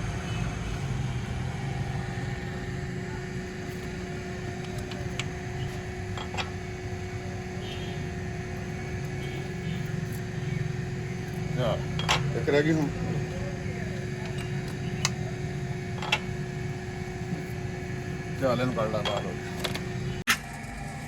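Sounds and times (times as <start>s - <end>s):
constant hum: 0.0s - 21.0s
low mechanical rumble: 0.0s - 21.0s.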